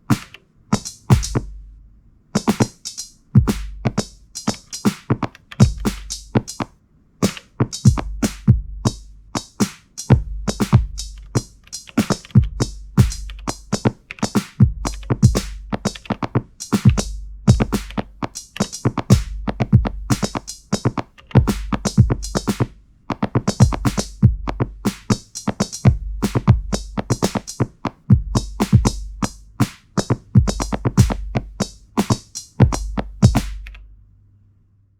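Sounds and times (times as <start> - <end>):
drum machine beat: 0.0 - 1.7, 2.4 - 33.8.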